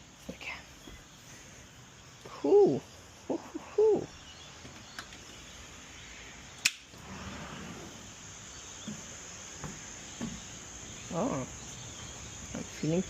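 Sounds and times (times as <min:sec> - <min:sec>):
crickets chirring: 0:00.0 - 0:13.0
sharp click: 0:06.6 - 0:06.9.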